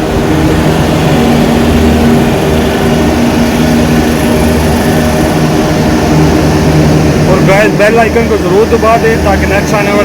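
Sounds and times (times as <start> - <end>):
chiller machine roar: 0.0 - 10.0.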